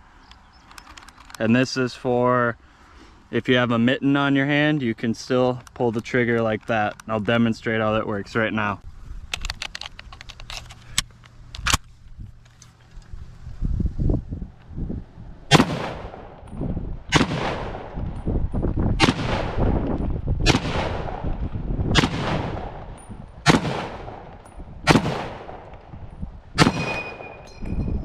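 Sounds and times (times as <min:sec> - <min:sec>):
rifle shots echoing: 0:15.5 - 0:18.2, 0:19.0 - 0:26.0, 0:26.6 - 0:27.5.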